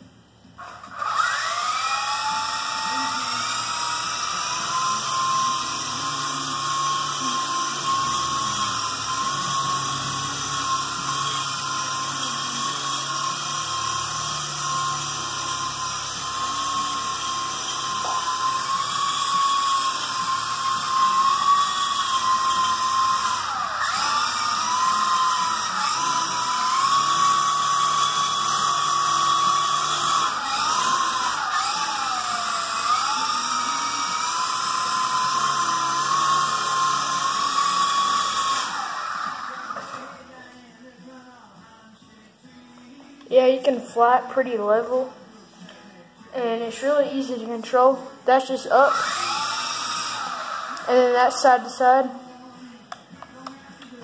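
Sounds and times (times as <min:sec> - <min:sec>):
toy helicopter motors whining: 0:00.6 - 0:40.2, 0:48.7 - 0:51.4.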